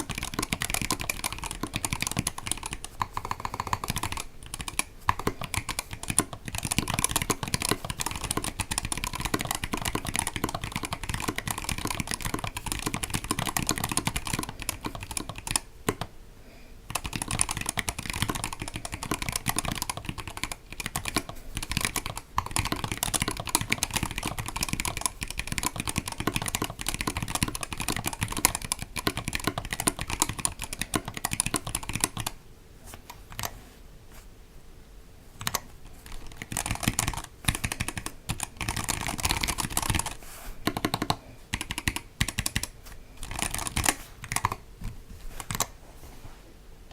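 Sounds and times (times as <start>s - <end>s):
fast mechanical keyboard typing: 0.0s - 16.1s, 16.9s - 32.4s, 35.4s - 45.7s.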